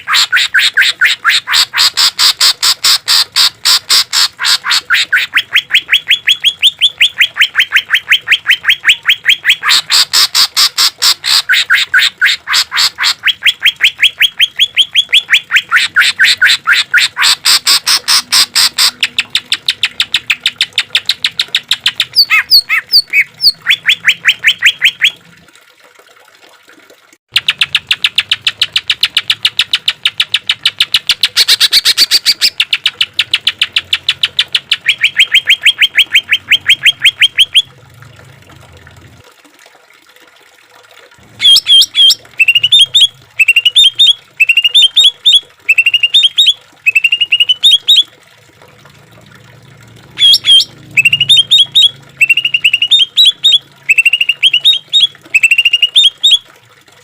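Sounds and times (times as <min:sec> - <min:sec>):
bird singing fast rising notes: 0:31.2 - 0:37.7, 0:41.4 - 0:48.1, 0:50.1 - 0:56.4
whistled bird notes: 0:41.4 - 0:48.1, 0:50.2 - 0:56.4.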